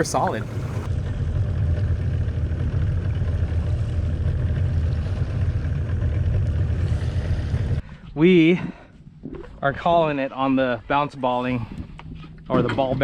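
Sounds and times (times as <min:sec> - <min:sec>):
outboard motor running: 0:00.0 - 0:07.8.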